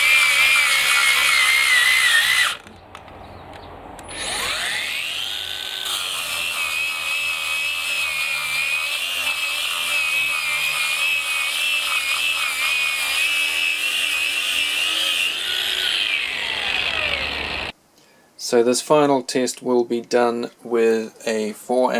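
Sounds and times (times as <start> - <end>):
angle grinder sanding wood: 0.0 - 2.7, 4.1 - 17.7.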